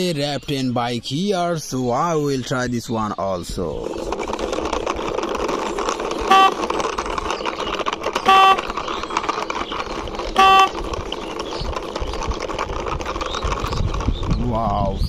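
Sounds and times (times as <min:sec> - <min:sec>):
toy motorbike rolling: 0:03.0 - 0:15.0
short horn beeps: 0:06.3 - 0:06.7, 0:08.2 - 0:08.8, 0:10.4 - 0:10.9.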